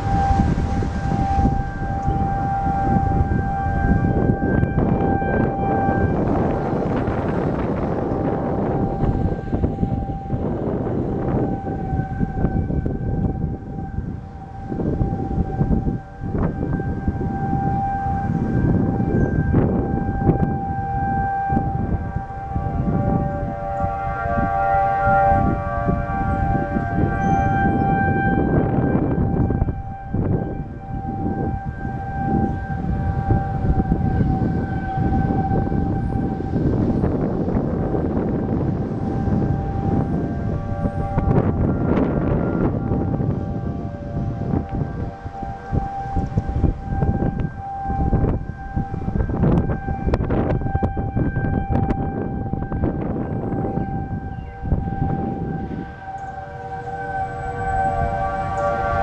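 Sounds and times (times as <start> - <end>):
warning siren steady tone: 0.0 - 59.0
wind rumble on microphone: 0.0 - 59.0.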